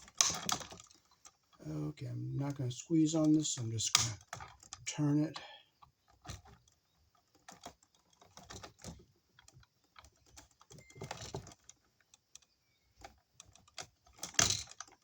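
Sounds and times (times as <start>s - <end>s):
wire nut clicking and scraping: 0.0s - 1.6s.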